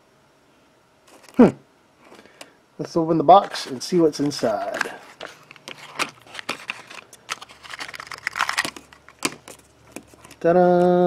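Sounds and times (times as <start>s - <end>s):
packaging rustling or tearing: 3.4s - 10.4s
packaging clicks and crinkling: 3.4s - 10.5s.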